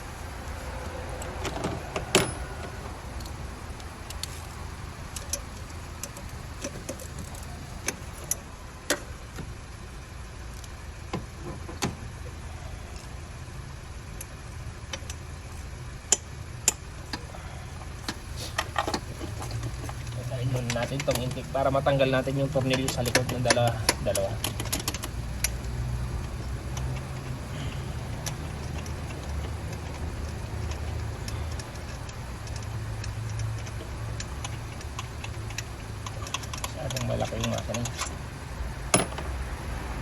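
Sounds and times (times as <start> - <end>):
steady low hum: 0.0 - 10.8, 12.0 - 40.0
hand tools clinking on metal: 26.6 - 38.2, 38.9 - 39.4.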